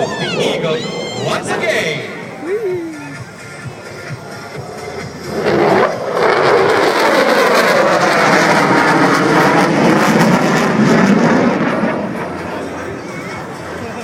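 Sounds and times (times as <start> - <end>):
jet engine roaring: 0.0 - 14.0.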